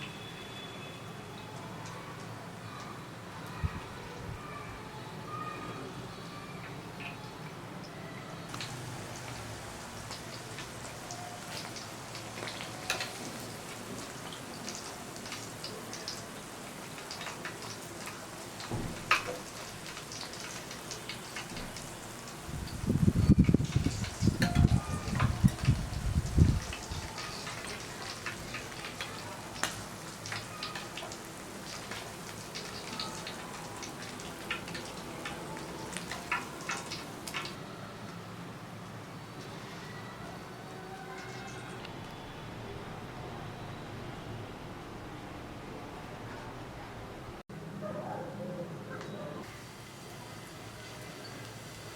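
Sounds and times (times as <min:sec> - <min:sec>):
oil crackling and popping: 0:08.5 - 0:37.6
wings sizzling in hot oil: 0:08.5 - 0:37.6, 0:41.0 - 0:41.9, 0:49.4 - 0:51.9.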